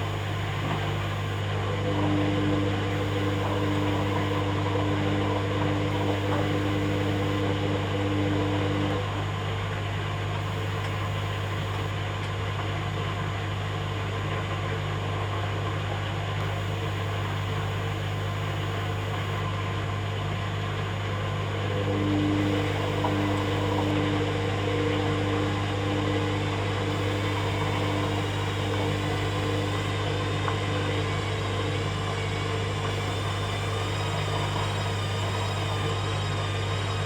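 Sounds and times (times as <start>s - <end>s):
high steady tone: 0.0s - 1.5s, 2.7s - 4.5s, 5.9s - 7.6s, 10.4s - 11.9s, 16.4s - 19.4s, 22.4s - 24.2s, 26.8s - 30.0s, 32.9s - 36.0s
washing machine humming: 0.0s - 37.0s.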